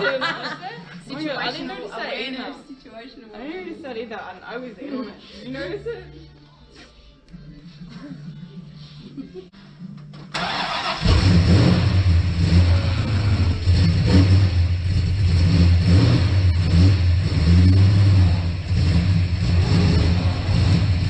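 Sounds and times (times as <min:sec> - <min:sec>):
car engine running unevenly: 0:10.5 - 0:21.0.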